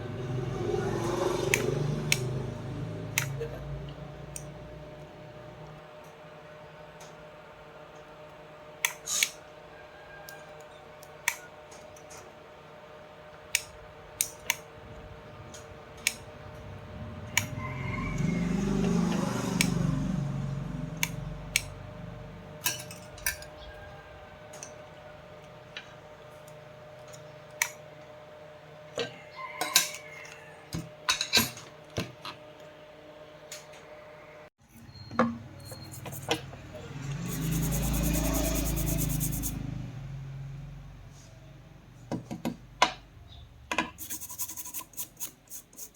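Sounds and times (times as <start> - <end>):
steady low hum: 35.7 - 39.6.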